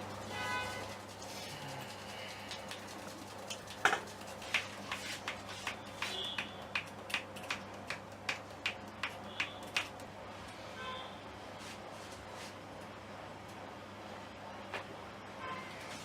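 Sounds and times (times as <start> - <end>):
sharp evenly spaced clicks: 2.4 - 10.1.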